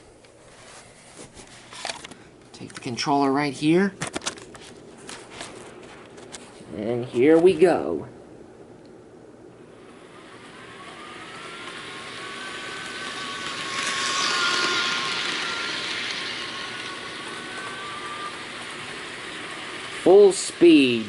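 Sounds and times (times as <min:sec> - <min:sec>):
model locomotive motor whine: 0:09.6 - 0:21.0
model train running rattle: 0:10.0 - 0:21.0.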